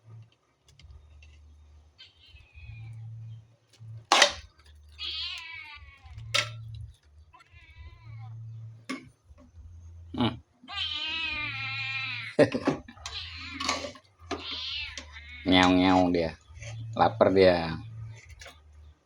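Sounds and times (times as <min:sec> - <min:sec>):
cat meowing: 0:05.0 - 0:06.4, 0:07.4 - 0:08.4, 0:10.6 - 0:16.2.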